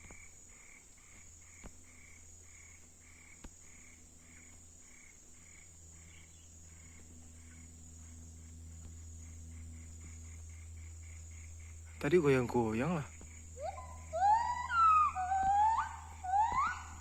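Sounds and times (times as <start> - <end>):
high-pitched insect drone: 0.0 - 17.0.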